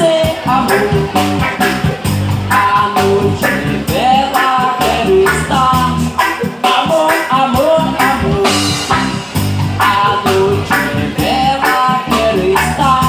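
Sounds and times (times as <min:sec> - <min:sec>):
reggae band playing: 0:00.0 - 0:13.0
sliding lead melody: 0:00.0 - 0:13.0.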